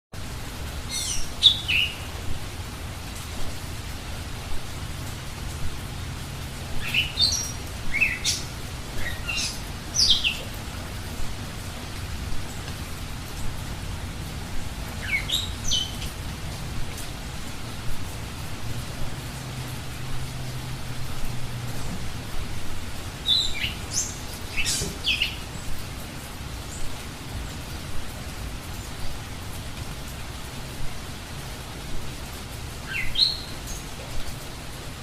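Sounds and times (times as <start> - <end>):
steady rain hiss: 0.1 - 35.0
songbird calling: 0.9 - 2.2, 6.8 - 10.6, 15.0 - 16.1, 23.2 - 25.7, 32.8 - 34.0.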